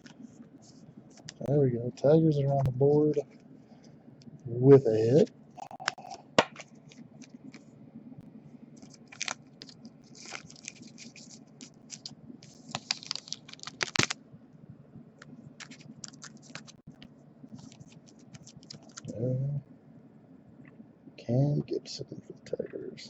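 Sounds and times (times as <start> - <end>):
trading cards clicking and scraping: 8.8 - 14.2, 15.6 - 16.9, 17.5 - 19.1.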